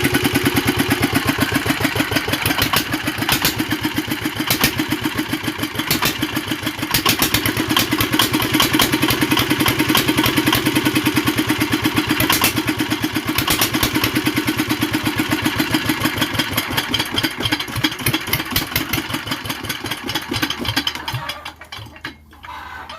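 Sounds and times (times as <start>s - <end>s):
diesel engine idling: 0.0s - 21.2s.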